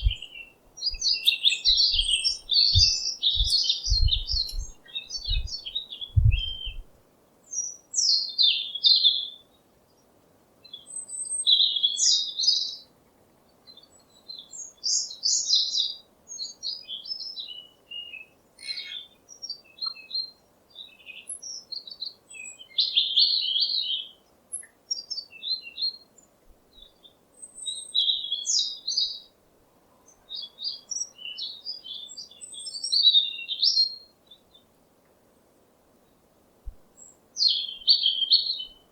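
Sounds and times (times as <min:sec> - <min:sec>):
songbird chirps and trills: 0:00.0 - 0:12.9, 0:13.5 - 0:38.9
low thumps: 0:01.9 - 0:05.6, 0:06.2 - 0:06.9.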